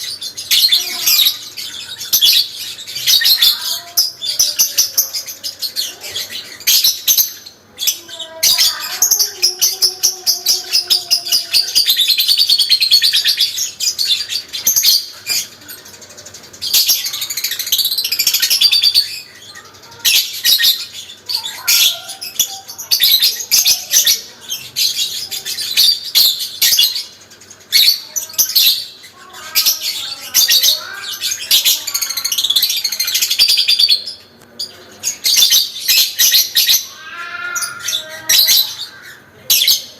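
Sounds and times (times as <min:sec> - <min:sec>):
lovebird chattering trills: 0:00.0 - 0:39.9.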